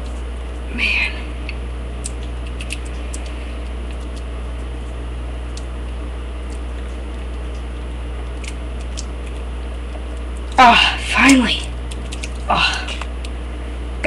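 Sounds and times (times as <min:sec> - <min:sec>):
low electrical hum: 0:00.0 - 0:14.0.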